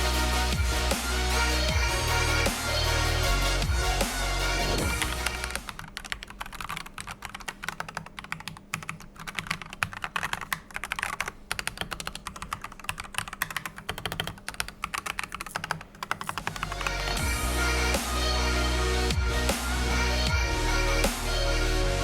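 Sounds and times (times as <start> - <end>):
mechanical keyboard typing: 5.8 - 16.8.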